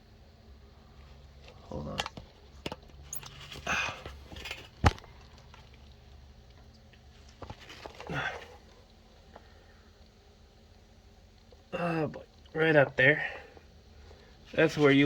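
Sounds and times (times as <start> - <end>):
rustling handling noises: 1.0 - 9.5, 14.0 - 15.0.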